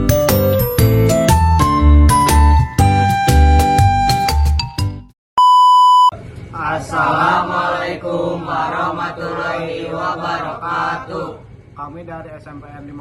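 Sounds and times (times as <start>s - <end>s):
bright music with bell-like notes: 0.0s - 4.9s
loud steady beep: 5.4s - 6.2s.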